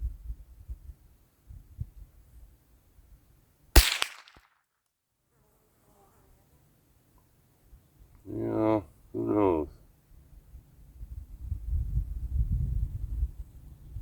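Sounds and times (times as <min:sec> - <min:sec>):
rifle shot: 0:03.8 - 0:04.5.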